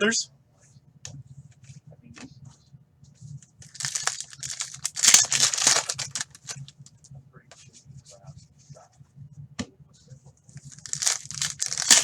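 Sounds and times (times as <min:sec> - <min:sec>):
faint low hum: 0:00.0 - 0:12.0
card pack wrapper crinkling: 0:03.6 - 0:06.7, 0:10.6 - 0:12.0.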